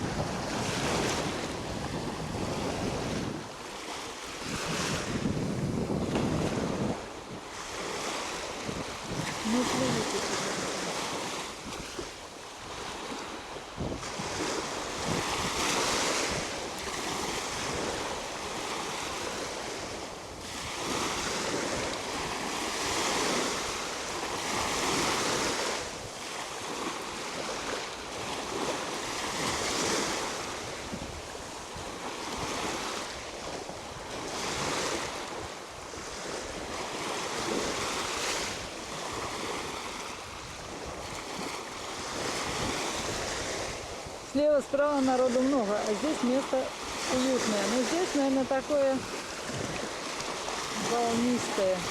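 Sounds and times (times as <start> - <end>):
waves breaking on shore: 0.0 - 51.9
wind buffeting microphone: 0.0 - 51.9.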